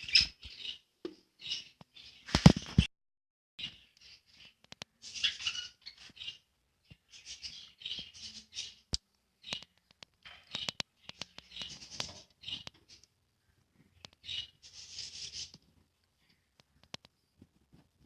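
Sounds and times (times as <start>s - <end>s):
budgerigars chirping: 0.0s - 0.8s, 3.6s - 6.4s, 7.0s - 8.8s, 14.0s - 15.5s.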